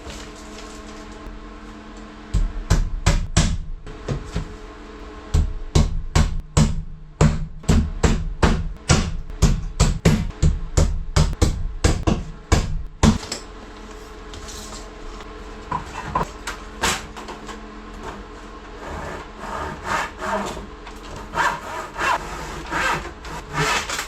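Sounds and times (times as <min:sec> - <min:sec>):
hand saw cutting wood: 0:18.8 - 0:24.0.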